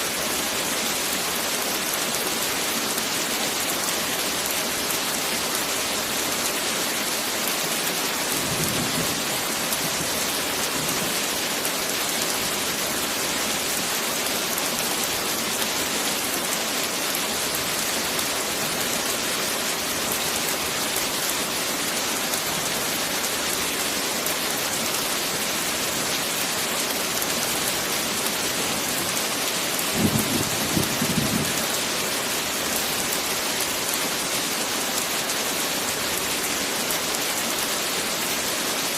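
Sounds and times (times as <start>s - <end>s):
heavy rain falling: 0.0s - 38.9s
low rumble of thunder: 29.9s - 31.7s.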